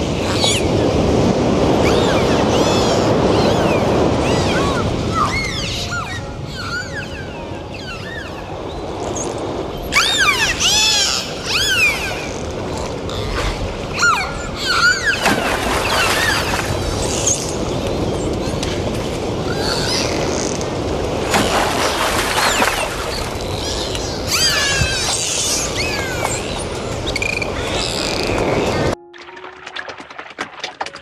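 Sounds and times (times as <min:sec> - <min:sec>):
animal calls rising and falling: 0:09.9 - 0:12.4, 0:13.1 - 0:17.3.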